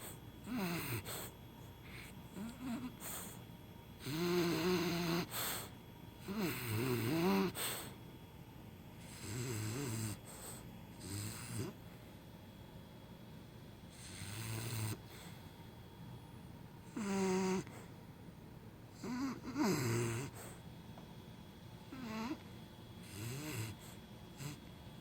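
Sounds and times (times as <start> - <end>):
snoring with voice-like pitch: 0.0 - 1.3, 1.9 - 3.2, 4.0 - 5.4, 6.2 - 7.8, 9.0 - 10.3, 11.0 - 11.8, 13.9 - 15.2, 16.9 - 17.9, 19.0 - 20.6, 21.9 - 22.4, 23.0 - 24.6.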